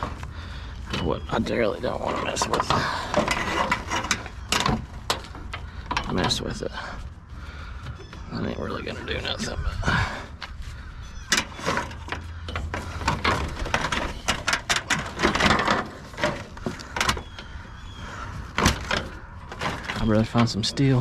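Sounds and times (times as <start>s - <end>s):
junk knocking and clattering: 0.0s - 6.9s, 11.2s - 21.0s.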